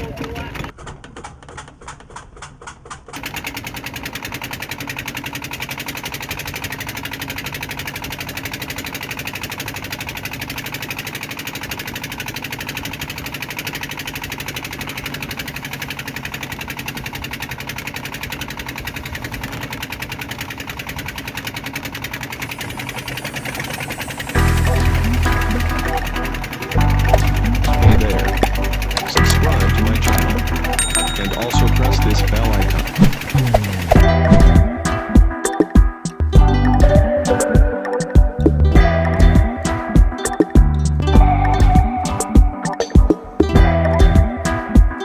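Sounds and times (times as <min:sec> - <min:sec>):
boat engine running: 0:03.2 - 0:35.6
loud music: 0:24.4 - 0:45.0.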